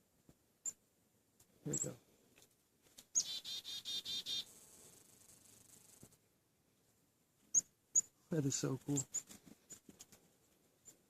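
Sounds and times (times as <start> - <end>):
songbird calling: 3.1 - 4.5.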